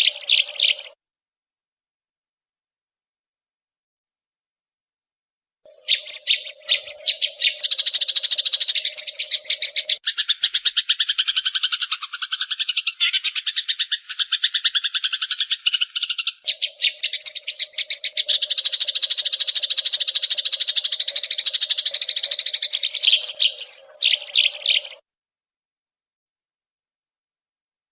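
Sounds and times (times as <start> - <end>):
songbird chattering trill: 0.0 - 1.0, 5.7 - 25.0.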